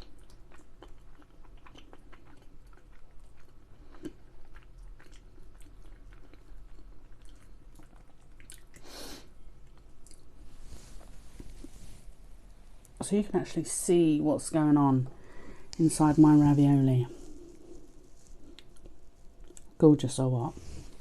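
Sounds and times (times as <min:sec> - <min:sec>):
person chewing food: 0:00.0 - 0:13.0, 0:17.1 - 0:19.8.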